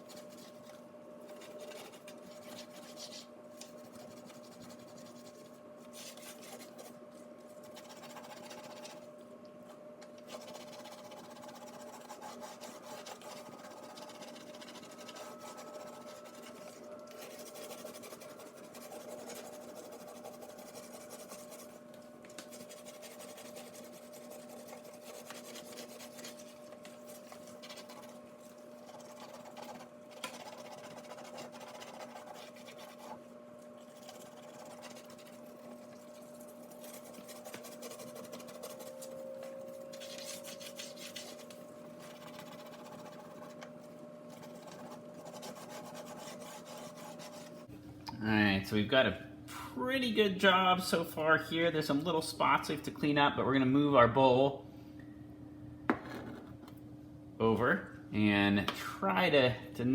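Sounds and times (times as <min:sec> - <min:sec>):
steady low hum: 0:00.0 - 0:59.9
scrubbing on glass: 0:01.3 - 0:07.0, 0:07.6 - 0:09.0, 0:10.2 - 0:21.8, 0:22.4 - 0:33.2, 0:33.8 - 0:43.7, 0:44.3 - 0:47.7.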